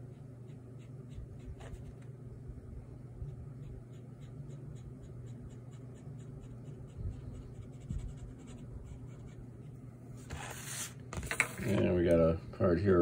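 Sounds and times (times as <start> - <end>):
steady low hum: 0.0 - 13.0
brush pen stroking paper: 10.3 - 11.8.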